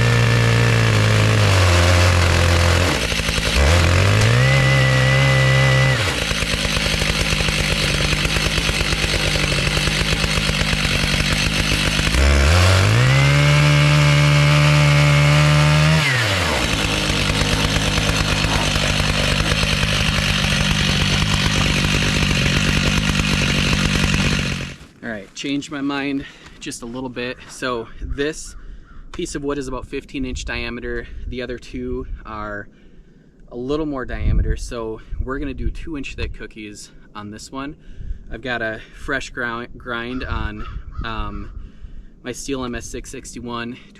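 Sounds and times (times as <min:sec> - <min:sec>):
chainsaw running: 0:00.0 - 0:25.0.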